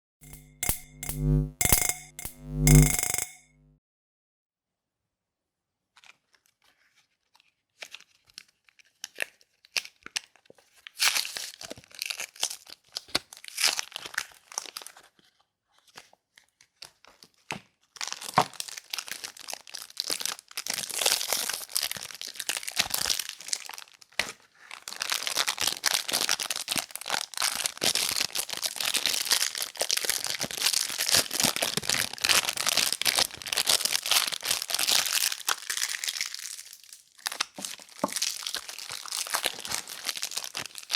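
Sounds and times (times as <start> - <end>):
wrapping crinkling and tearing: 24.9 - 40.9.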